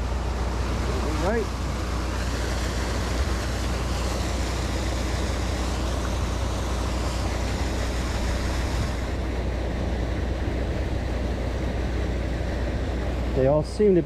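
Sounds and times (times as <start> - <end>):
water pouring over falls: 1.0 - 10.6.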